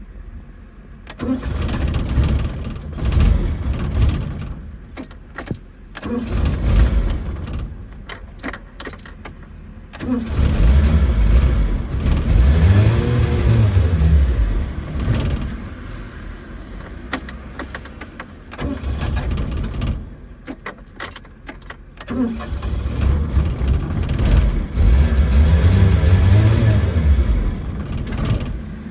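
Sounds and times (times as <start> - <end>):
car engine cranking and coughing: 1.0 - 28.9
car engine revving: 1.1 - 8.4, 9.9 - 20.4, 22.1 - 28.9.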